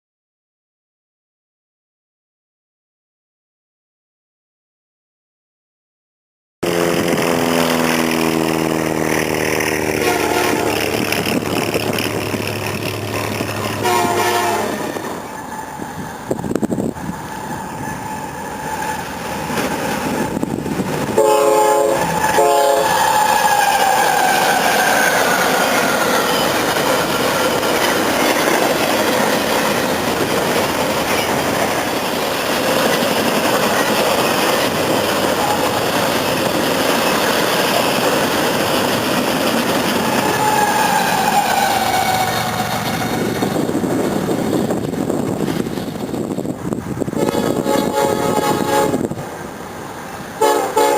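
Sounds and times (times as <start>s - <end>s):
train horn: 6.6s - 11.6s, 13.0s - 15.8s, 21.2s - 26.5s, 40.1s - 43.2s, 47.1s - 49.2s, 50.4s - 50.9s
train wheels clattering on rail: 7.0s - 49.5s.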